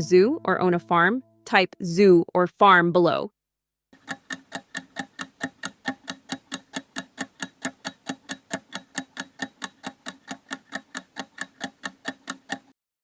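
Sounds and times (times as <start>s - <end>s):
clock ticking quickly: 4.0s - 12.8s.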